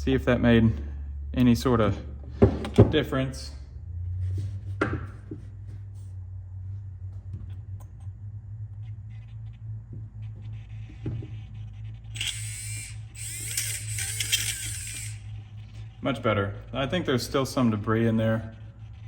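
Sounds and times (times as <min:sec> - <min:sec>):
electric motor whining: 0:08.7 - 0:16.0
motor clicks: 0:12.0 - 0:15.5.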